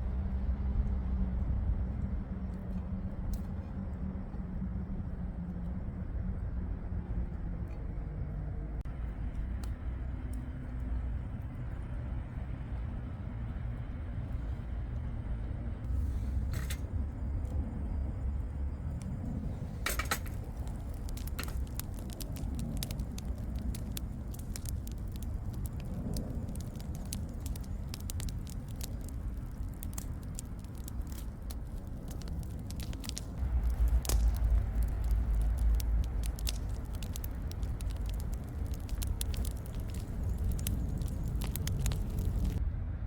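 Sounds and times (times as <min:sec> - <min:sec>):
low steady rumble: 0:00.0 - 0:43.0
campfire crackling: 0:08.8 - 0:42.6.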